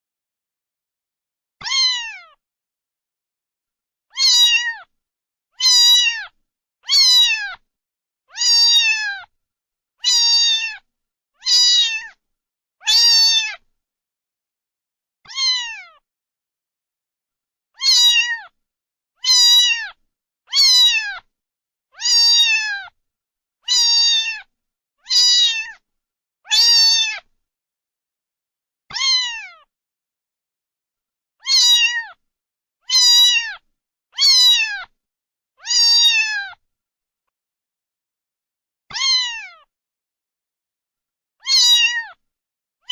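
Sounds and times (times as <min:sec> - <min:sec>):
cat meowing: 0:01.6 - 0:02.4, 0:04.1 - 0:04.9, 0:05.6 - 0:07.6, 0:08.3 - 0:09.3, 0:10.0 - 0:12.2, 0:12.8 - 0:13.6, 0:15.3 - 0:16.0, 0:17.8 - 0:18.6, 0:19.2 - 0:21.3, 0:22.0 - 0:23.0, 0:23.6 - 0:25.8, 0:26.5 - 0:27.3, 0:28.9 - 0:29.7, 0:31.4 - 0:32.2, 0:32.8 - 0:34.9, 0:35.6 - 0:36.6, 0:38.9 - 0:39.7, 0:41.4 - 0:42.2.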